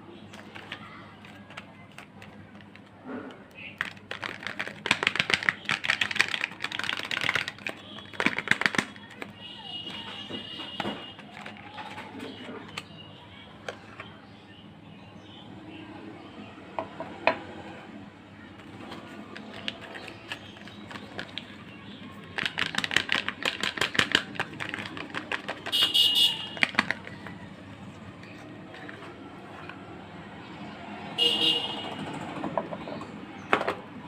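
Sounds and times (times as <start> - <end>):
packaging crinkling and clicking: 0.3 - 9.3, 9.9 - 13.0, 18.6 - 29.8
fast crackling: 0.3 - 13.0, 18.7 - 29.7.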